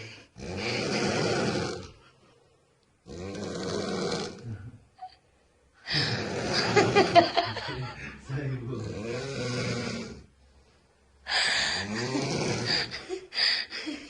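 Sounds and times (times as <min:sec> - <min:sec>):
woman snoring: 0:00.0 - 0:02.0, 0:03.1 - 0:04.4, 0:05.9 - 0:07.1, 0:08.9 - 0:10.2, 0:11.3 - 0:13.2.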